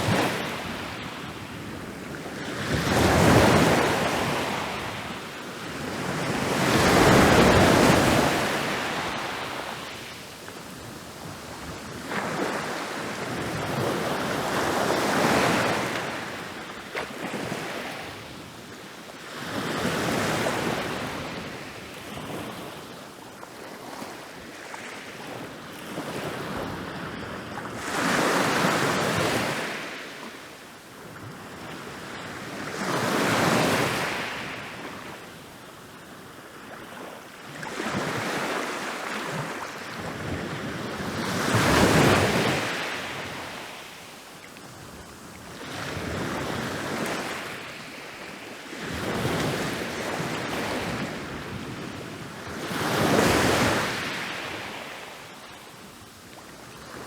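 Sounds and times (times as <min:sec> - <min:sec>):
ocean waves breaking on beach: 0:00.0 - 0:18.4, 0:31.3 - 0:57.0.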